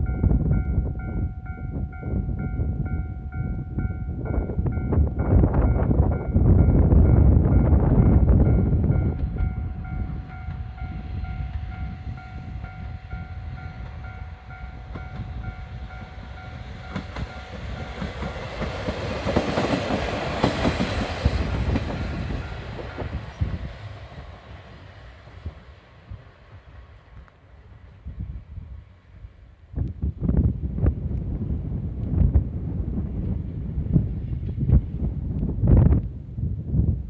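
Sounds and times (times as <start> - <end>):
level crossing warning bell: 0.0 - 18.8, 22.1 - 23.4
diesel railcar rolling past: 0.0 - 36.1.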